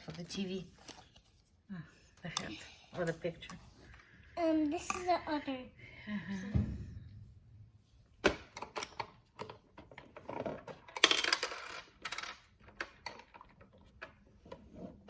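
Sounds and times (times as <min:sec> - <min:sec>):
plastic toy pieces clicking: 0:10.7 - 0:13.9.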